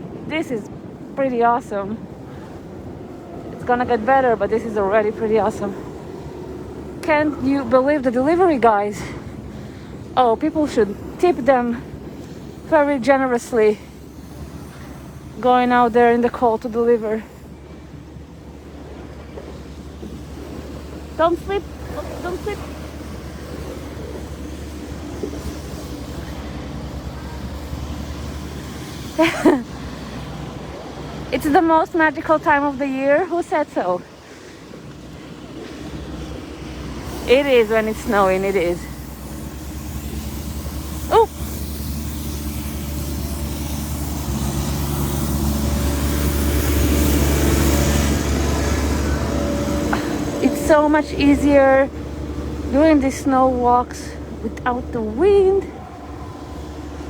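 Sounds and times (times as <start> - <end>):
city street rumble: 0.0 - 57.0.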